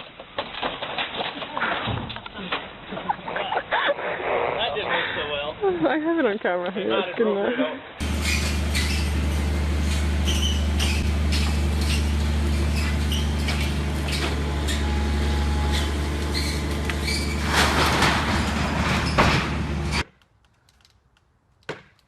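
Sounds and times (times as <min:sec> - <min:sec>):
knocks and rattles: 0:00.0 - 0:03.1, 0:15.6 - 0:20.0
machine low drone: 0:08.0 - 0:20.0.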